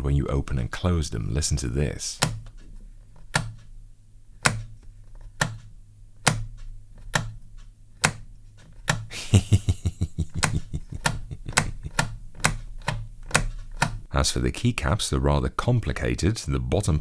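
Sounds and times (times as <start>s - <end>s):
keyboard feet clicking: 8.9s - 14.1s.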